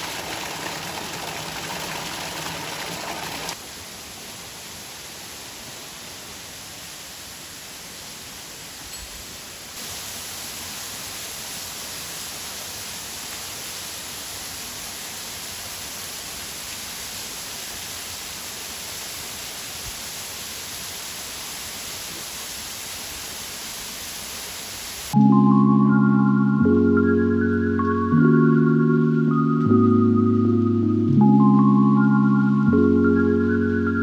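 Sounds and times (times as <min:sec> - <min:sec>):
waterfall rushing: 0:00.0 - 0:03.6.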